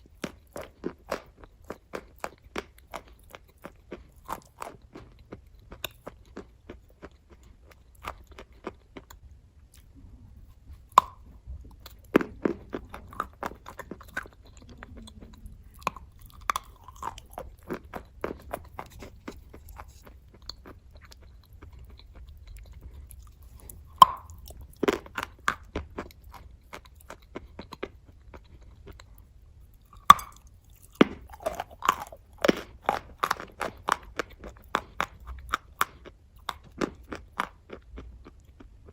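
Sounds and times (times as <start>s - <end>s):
crisp crunching chews: 0.0s - 38.9s
chalk snapping bites: 24.0s - 24.4s.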